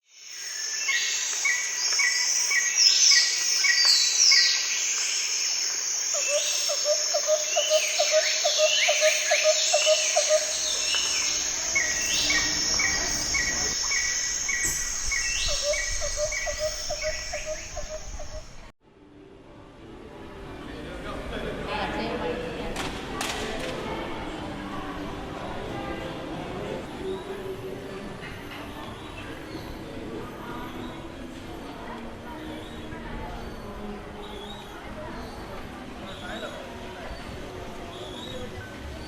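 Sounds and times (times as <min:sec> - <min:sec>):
high insect drone: 0:00.1 - 0:18.7
chorus of birds calling: 0:06.1 - 0:18.7.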